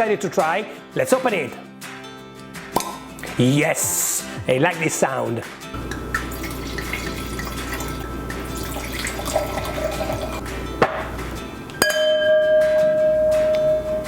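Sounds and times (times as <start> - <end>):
background music: 0.0 - 14.0
wine pouring into glasses: 5.8 - 10.4
glass clink: 11.7 - 14.0
steady ringing tone: 11.8 - 14.0.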